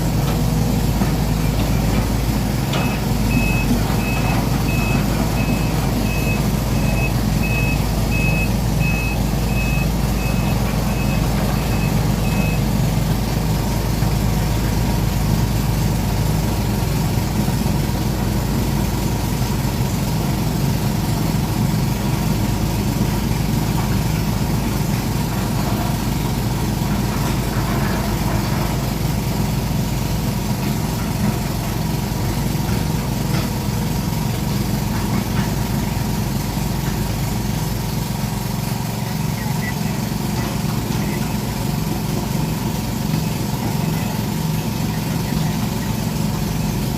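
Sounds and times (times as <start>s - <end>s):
excavator diesel engine running: 0.0s - 46.9s
travel alarm beeping: 2.8s - 12.7s, 39.4s - 40.1s.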